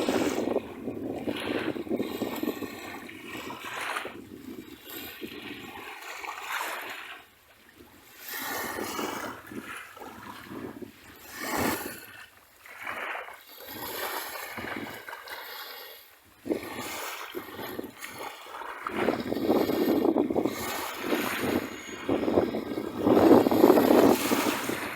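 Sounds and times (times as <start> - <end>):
sea waves breaking on beach: 0.0 - 24.9.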